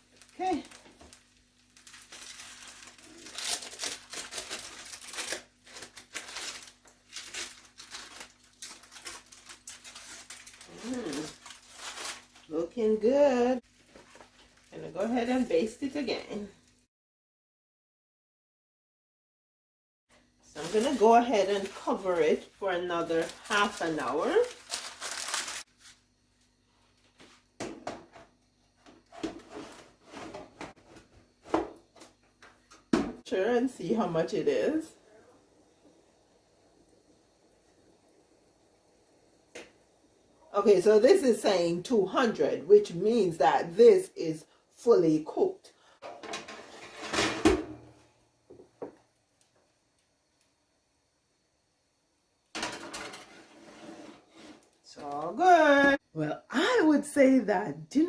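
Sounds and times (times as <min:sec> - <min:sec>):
foil and paper crinkling: 0:00.0 - 0:12.5, 0:20.6 - 0:26.1
oven rack and pan clattering: 0:46.0 - 0:48.0, 0:52.5 - 0:53.6.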